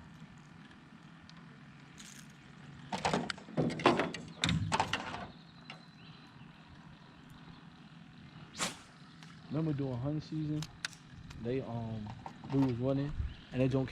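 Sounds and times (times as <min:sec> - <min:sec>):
loud knocks and rattles: 0:02.9 - 0:05.3.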